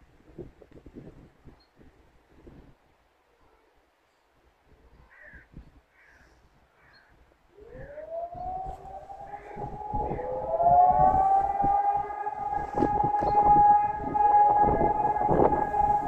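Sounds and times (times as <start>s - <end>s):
civil defence siren howling: 7.5s - 16.0s
lower rising siren tone: 7.5s - 16.0s.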